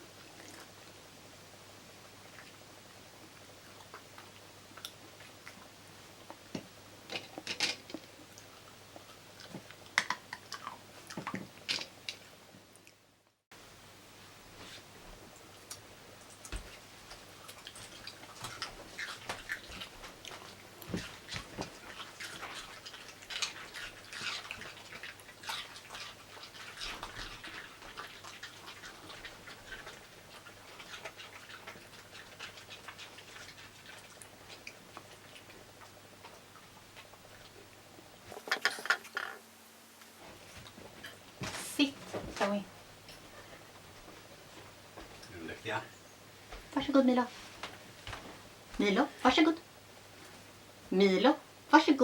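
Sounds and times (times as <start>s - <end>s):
dogs crunching vegetables: 0.1s - 0.9s, 3.2s - 13.0s, 15.5s - 39.4s.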